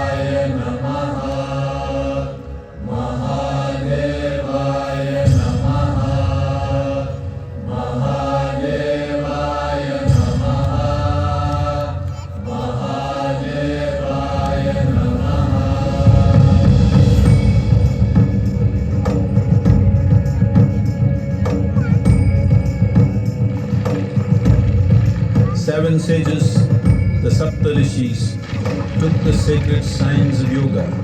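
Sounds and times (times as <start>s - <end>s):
person chanting: 0.0s - 17.5s, 25.2s - 31.0s
low drone: 0.0s - 31.0s.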